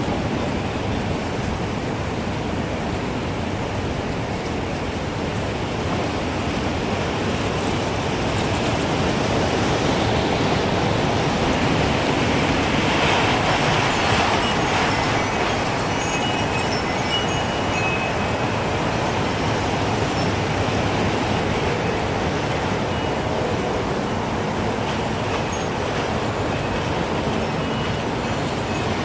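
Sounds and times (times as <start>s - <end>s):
gusting wind: 0.0s - 29.0s
wind chimes tinkling: 11.5s - 29.0s.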